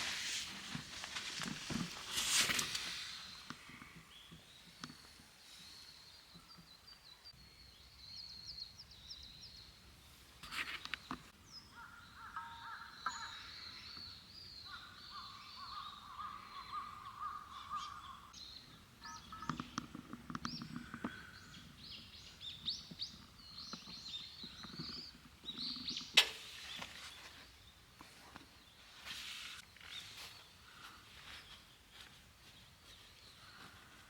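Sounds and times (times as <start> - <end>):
birds chirping: 10.5 - 34.0.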